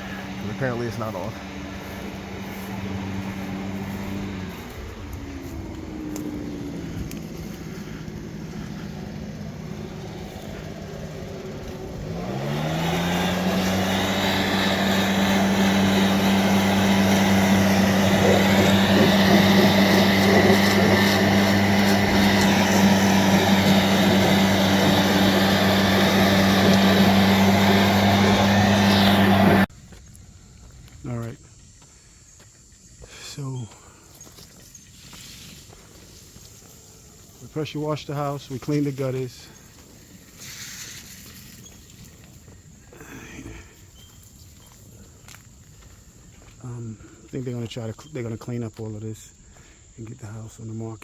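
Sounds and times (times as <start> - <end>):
pressure washer engine running: 0.0 - 29.7
spray hiss: 13.5 - 26.8.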